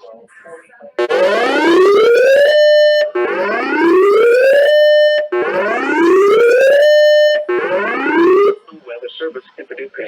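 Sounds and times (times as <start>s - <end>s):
rising siren alert tone: 1.0s - 8.6s.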